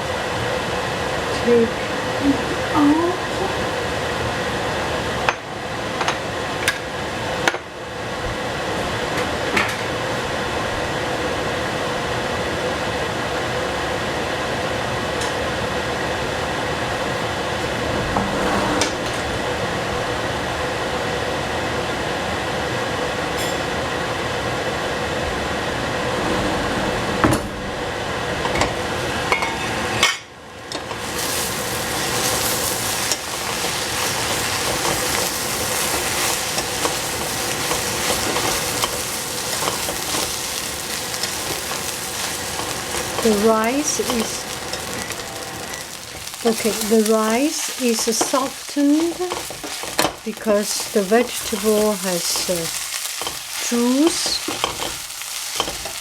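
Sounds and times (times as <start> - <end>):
cooking hiss: 0.0 - 56.0
utensil clinking on pan and dishes: 30.7 - 56.0.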